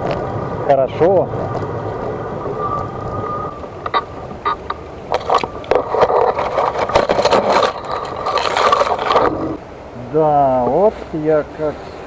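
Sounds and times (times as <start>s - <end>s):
rough scraping and grinding: 0.0s - 9.6s
wheelchair motors whining: 1.4s - 9.6s.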